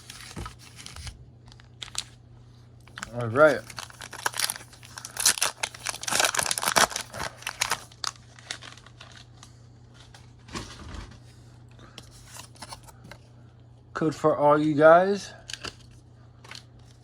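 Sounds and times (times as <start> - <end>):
cards rustling and clicking: 0.0 - 2.1, 2.9 - 9.3, 12.0 - 13.2
foil wrapper tearing and crinkling: 0.0 - 2.1, 2.9 - 9.4.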